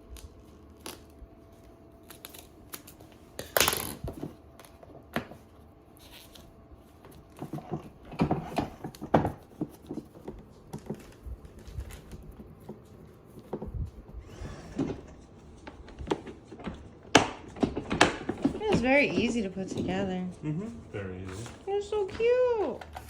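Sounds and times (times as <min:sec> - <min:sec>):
plastic parts clicking and knocking: 0:15.6 - 0:20.0.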